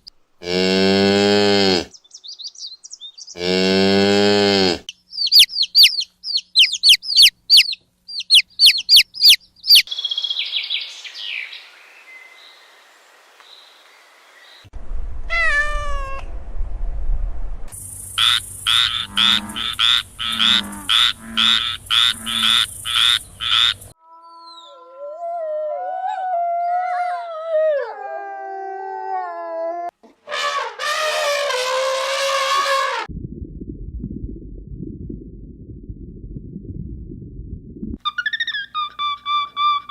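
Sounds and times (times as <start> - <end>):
low rumble: 14.8 - 20.9, 33.1 - 38.0
animal calls: 18.2 - 24.8.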